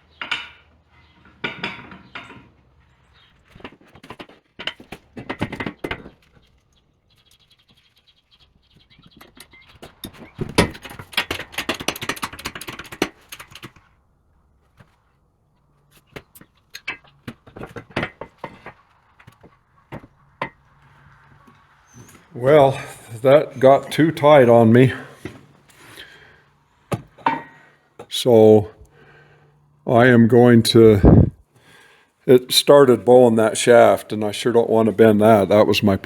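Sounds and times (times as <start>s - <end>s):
metal clatter: 0.1s - 7.4s, 9.0s - 14.0s, 15.6s - 22.9s
steel pieces clanking: 9.2s - 13.8s.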